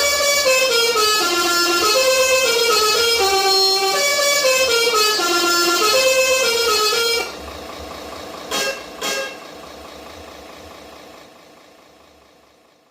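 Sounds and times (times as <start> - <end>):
melodic horn tune: 0.0 - 7.4, 8.5 - 9.4
short horn toots: 0.0 - 7.4, 8.5 - 9.5
simulated engine idle: 0.0 - 12.9.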